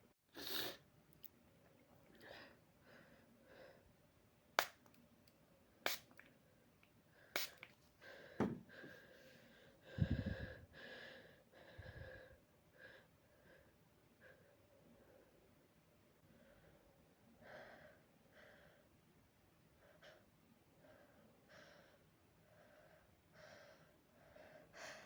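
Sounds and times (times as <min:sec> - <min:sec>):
person sniffing and breathing: 0:00.3 - 0:00.8, 0:07.2 - 0:12.2
aerosol spray puffs: 0:05.8 - 0:06.1, 0:07.4 - 0:07.7.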